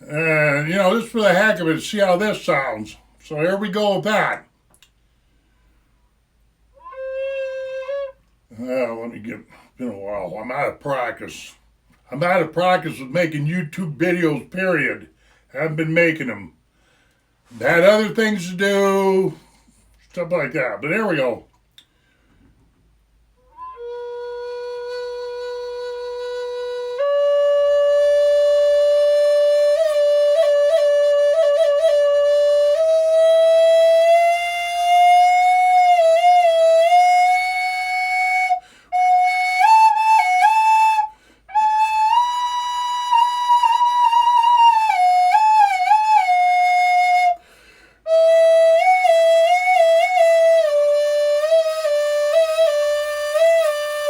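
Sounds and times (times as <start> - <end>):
solo flute melody: 6.7 - 8.4, 23.4 - 54.0.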